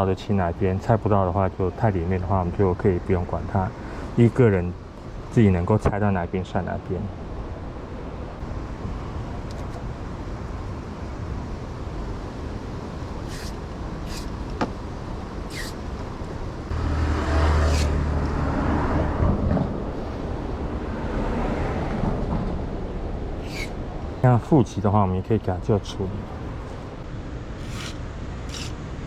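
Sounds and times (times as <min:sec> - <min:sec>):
road traffic rumble: 0:00.0 - 0:29.0
short high hisses: 0:13.3 - 0:14.3, 0:15.5 - 0:15.8, 0:23.4 - 0:23.8
vehicle passing: 0:16.6 - 0:24.2.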